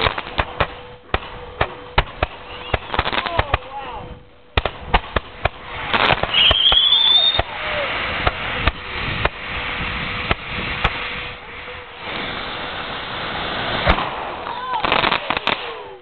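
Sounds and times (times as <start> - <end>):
crackling hiss: 0.0 - 16.0
fireworks bangs and pops: 0.0 - 16.0
rising firework whistle: 0.0 - 16.0.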